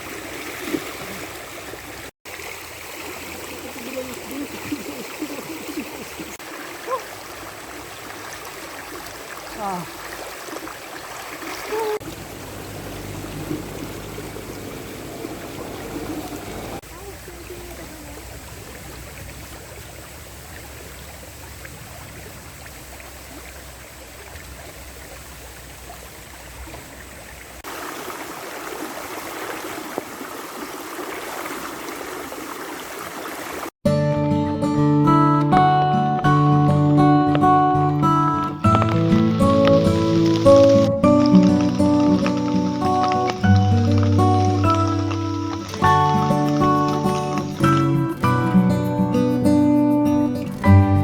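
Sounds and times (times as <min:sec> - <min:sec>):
rain pattering: 0:02.3 - 0:25.8, 0:36.2 - 0:48.4.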